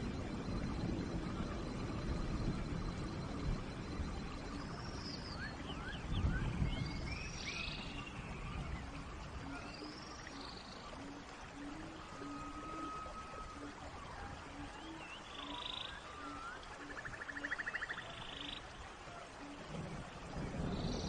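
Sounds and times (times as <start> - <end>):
rain falling in forest: 0.0 - 21.0
birds whistling and chirping: 4.4 - 13.8.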